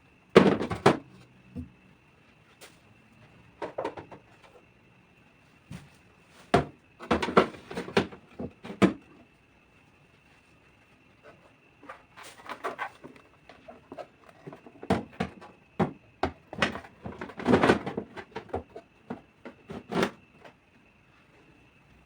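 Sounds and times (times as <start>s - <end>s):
food containers knocking and rustling: 0.4s - 1.8s, 2.6s - 4.7s, 5.6s - 9.2s, 11.2s - 20.6s.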